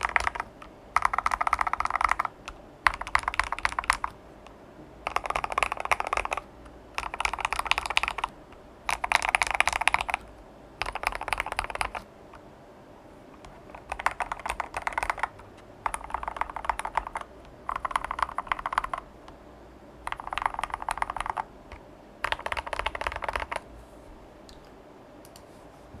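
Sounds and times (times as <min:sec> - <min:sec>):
fast mechanical keyboard typing: 0:00.0 - 0:04.2, 0:05.0 - 0:12.1, 0:13.4 - 0:19.1, 0:20.0 - 0:23.7.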